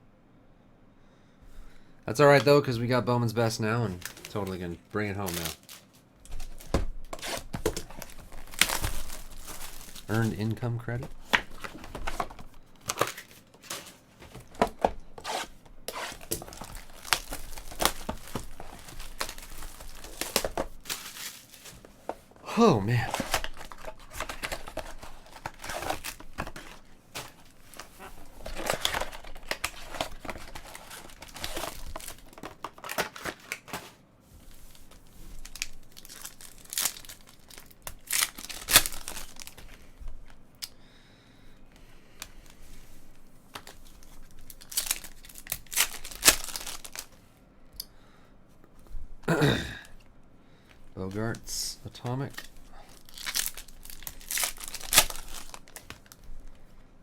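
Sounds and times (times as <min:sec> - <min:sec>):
foil wrappers ripping and crinkling: 0:03.4 - 0:22.0, 0:22.6 - 0:34.0, 0:34.6 - 0:39.9, 0:43.5 - 0:47.2, 0:52.2 - 0:56.6.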